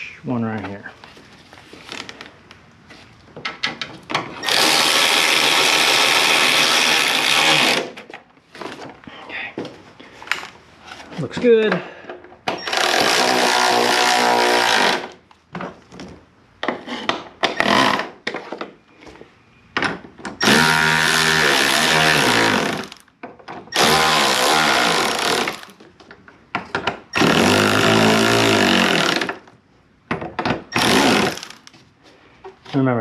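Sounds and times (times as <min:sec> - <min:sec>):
power driver motor: 0:04.4 - 0:08.0, 0:12.6 - 0:15.2, 0:20.4 - 0:23.0, 0:23.8 - 0:25.8, 0:27.2 - 0:29.4, 0:30.8 - 0:31.8.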